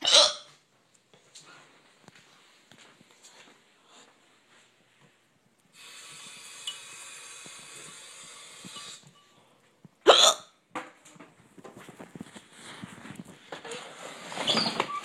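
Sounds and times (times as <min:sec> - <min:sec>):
person hiccuping: 0:00.0 - 0:00.5, 0:10.1 - 0:10.5
steady hiss: 0:05.7 - 0:09.6.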